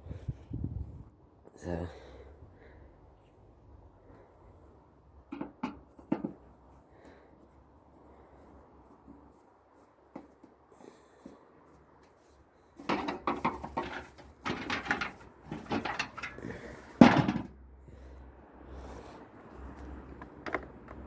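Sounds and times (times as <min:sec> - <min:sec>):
dryer parts knocking and clattering: 0:05.3 - 0:06.4, 0:12.8 - 0:17.6.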